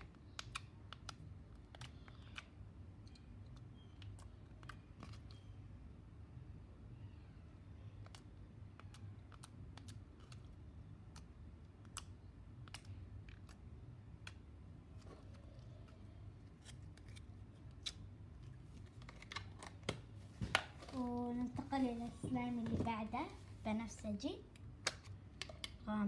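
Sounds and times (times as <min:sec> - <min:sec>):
sticky clicks and pops: 0:00.0 - 0:05.4, 0:08.0 - 0:14.5.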